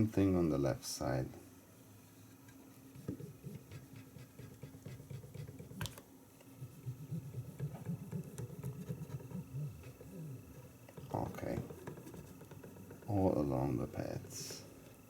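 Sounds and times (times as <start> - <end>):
cotton swab rubbing and tapping: 2.9 - 13.4.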